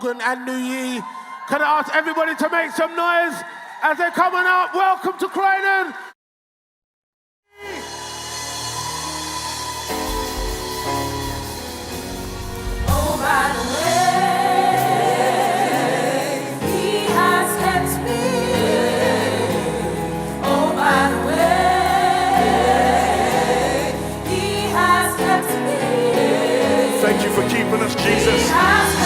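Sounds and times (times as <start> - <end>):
gospel vocal group singing: 7.6 - 29.0
instrumental backing: 8.1 - 29.0.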